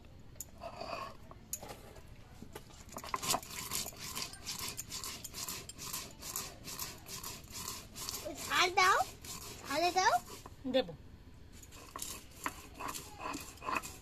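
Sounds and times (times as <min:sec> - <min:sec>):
rhythmic scraping strokes: 0:03.0 - 0:10.6, 0:11.5 - 0:14.0.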